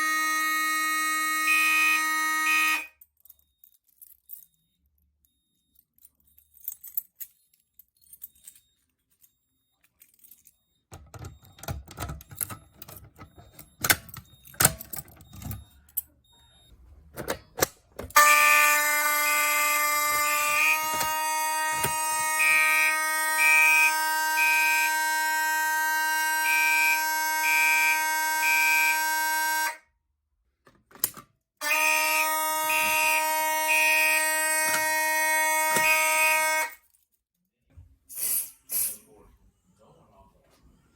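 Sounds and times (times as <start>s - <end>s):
fire alarm horns: 0.0s - 3.7s, 8.2s - 30.0s, 31.6s - 36.8s.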